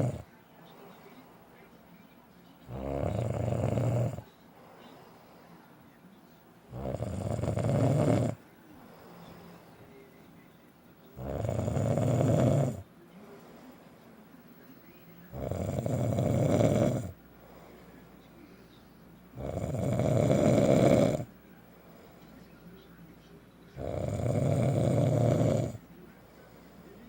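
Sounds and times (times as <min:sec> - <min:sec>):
man snoring loudly: 0:00.0 - 0:00.2, 0:02.7 - 0:04.2, 0:06.7 - 0:08.4, 0:11.2 - 0:12.8, 0:15.4 - 0:17.2, 0:19.4 - 0:21.3, 0:23.8 - 0:25.8
quiet breathing: 0:00.0 - 0:27.0.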